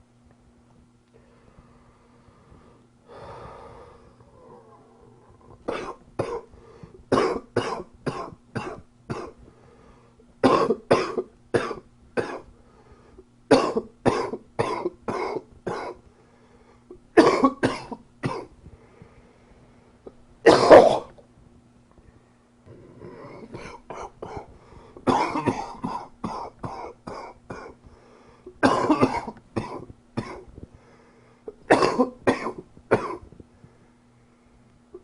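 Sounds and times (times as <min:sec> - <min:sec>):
man coughing: 0:05.6 - 0:06.5, 0:07.1 - 0:09.4, 0:10.4 - 0:12.5, 0:13.5 - 0:16.0, 0:17.2 - 0:18.5, 0:20.5 - 0:21.1, 0:23.2 - 0:27.8, 0:28.6 - 0:30.5, 0:31.7 - 0:33.3.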